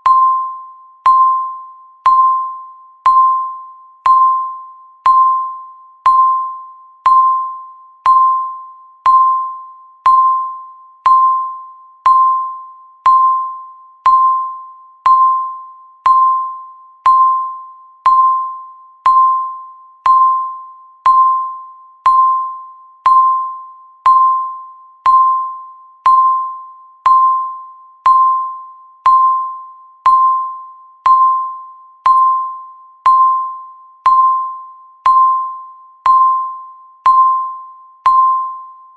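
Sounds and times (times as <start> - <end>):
countdown timer ding: 0.0 - 38.7.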